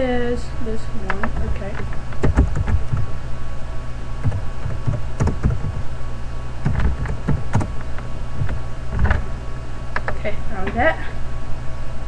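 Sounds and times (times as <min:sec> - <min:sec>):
steady low hum: 0:00.0 - 0:12.0
irregular knocks and clicks: 0:01.1 - 0:03.1, 0:04.2 - 0:05.9, 0:06.6 - 0:09.3, 0:09.9 - 0:10.2.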